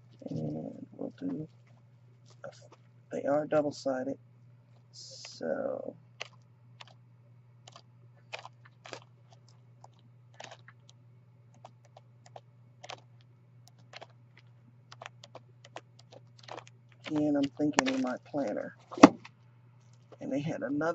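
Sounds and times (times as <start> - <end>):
faint low hum: 0.0 - 20.9
paper sheets tapping and rustling: 15.0 - 19.3.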